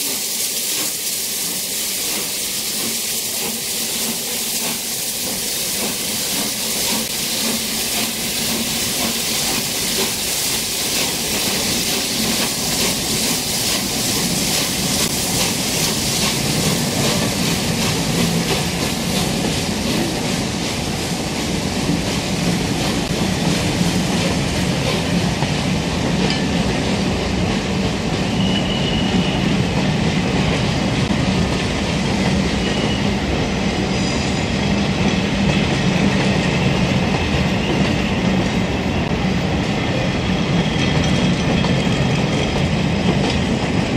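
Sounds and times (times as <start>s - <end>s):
train wheels clattering on rails: 0.0s - 43.9s.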